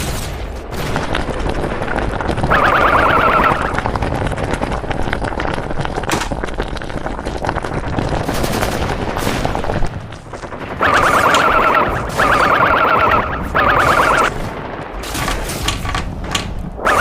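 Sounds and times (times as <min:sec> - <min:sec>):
wavering alarm-like tone: 0:02.5 - 0:03.8, 0:10.8 - 0:14.3
rapid rattle of clicks and bangs: 0:13.8 - 0:16.8.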